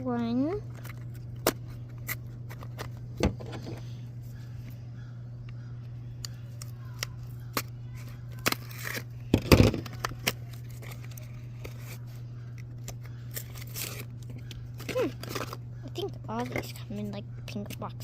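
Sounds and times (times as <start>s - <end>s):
steady low hum: 0.0s - 18.0s
packaging crinkling and tearing: 6.5s - 16.6s.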